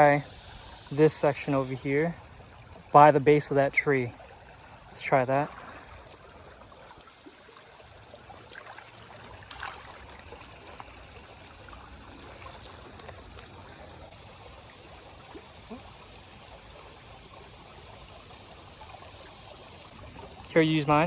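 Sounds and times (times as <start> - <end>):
creek water rushing over riffle: 0.0 - 21.0
faint clicks: 6.0 - 6.3.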